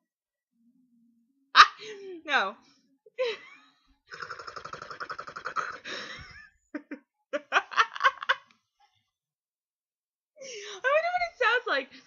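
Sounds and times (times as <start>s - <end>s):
buzzy pulsing throat sound: 4.1s - 5.9s
person giggling: 5.4s - 8.5s.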